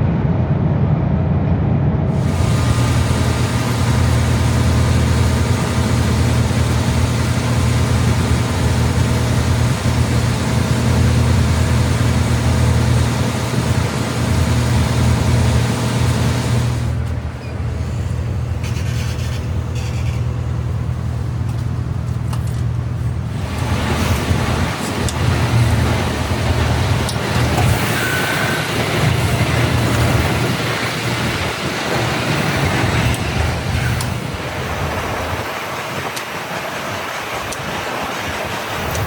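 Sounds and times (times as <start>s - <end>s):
lorry engine drone: 0.0s - 39.0s
road and tyre hiss: 2.1s - 39.0s.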